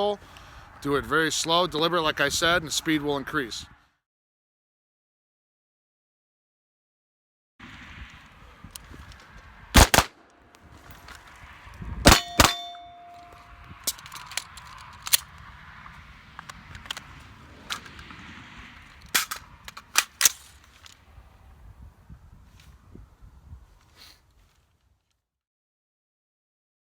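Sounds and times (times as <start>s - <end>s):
gun handling clicks: 8.7s - 10.2s, 12.1s - 15.5s, 16.4s - 18.2s, 19.0s - 21.0s
gunshots: 9.8s - 10.2s, 12.1s - 12.8s
short metallic ring: 12.1s - 13.4s.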